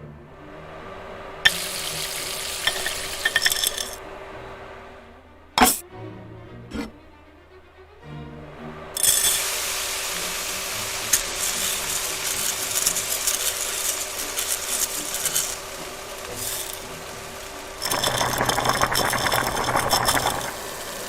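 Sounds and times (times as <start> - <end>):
loud dense rattle: 1.5 - 4.0, 9.0 - 21.0
mechanical clicking and scraping: 1.5 - 4.0, 9.0 - 21.0.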